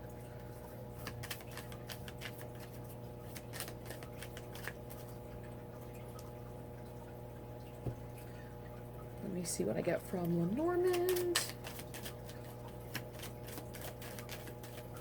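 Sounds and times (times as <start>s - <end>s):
electrical hum: 0.0s - 15.0s
cards clicking: 1.0s - 4.8s, 11.0s - 15.0s.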